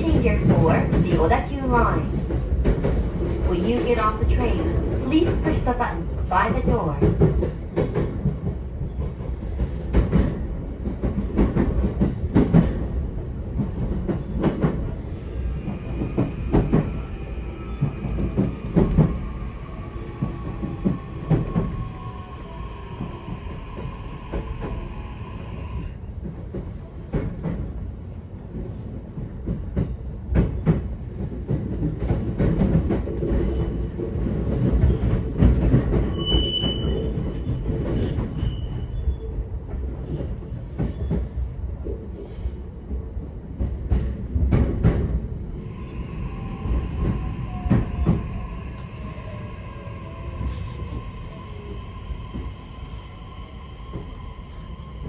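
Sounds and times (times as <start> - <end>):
electric train rumbling: 0.0 - 55.0
train wheel squeal: 14.1 - 26.4, 34.6 - 41.5, 45.2 - 55.0.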